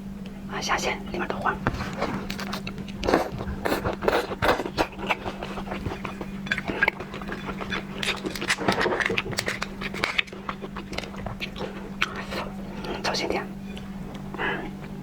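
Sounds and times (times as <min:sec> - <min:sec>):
low hum: 0:00.0 - 0:15.0
lobster shell cracking: 0:02.2 - 0:13.0.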